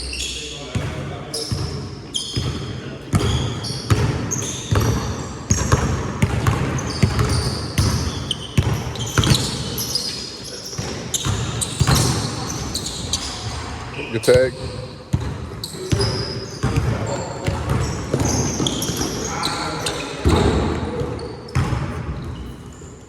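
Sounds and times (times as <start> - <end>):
shoe squeaks: 0.0 - 5.8, 6.7 - 14.9, 15.6 - 23.0
basketball bouncing on court: 0.7 - 9.8, 10.7 - 13.8, 14.5 - 22.6.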